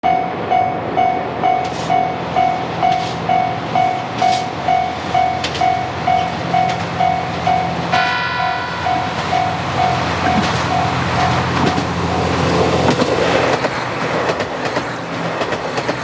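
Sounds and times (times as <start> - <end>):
level-crossing alarm bell dinging: 0.0 - 12.8
diesel train hum: 0.0 - 16.0
train horn: 1.6 - 12.5.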